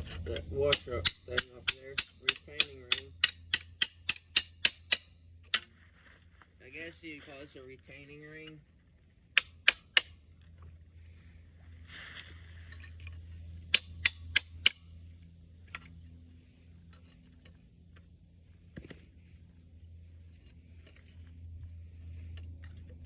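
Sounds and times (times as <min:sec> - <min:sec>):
hammer striking steel bar: 0:00.6 - 0:05.7, 0:09.4 - 0:10.2, 0:13.7 - 0:14.8.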